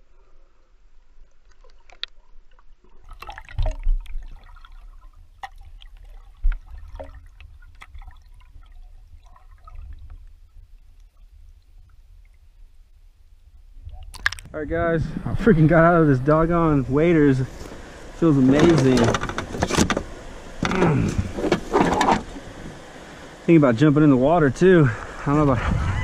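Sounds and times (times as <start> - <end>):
water splashing and trickling: 1.0 - 14.5
low rumble on microphone: 6.2 - 23.5, 24.2 - 26.0.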